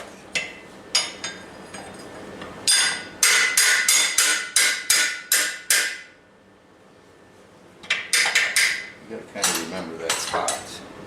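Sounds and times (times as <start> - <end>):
hammer striking steel: 2.7 - 6.1, 8.0 - 8.9.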